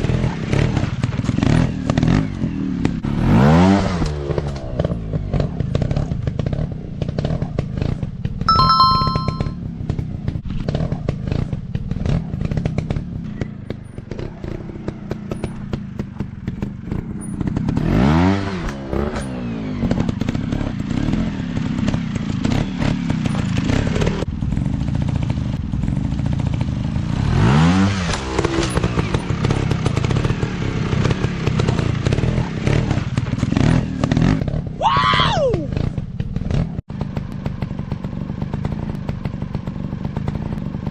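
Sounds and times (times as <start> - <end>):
brief high beep: 8.5 - 9.5.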